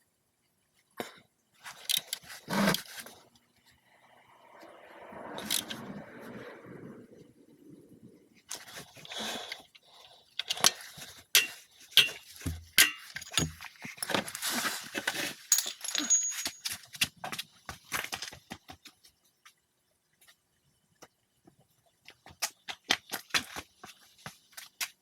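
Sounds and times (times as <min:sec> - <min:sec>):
metal tools clinking and scraping: 0:10.4 - 0:17.0.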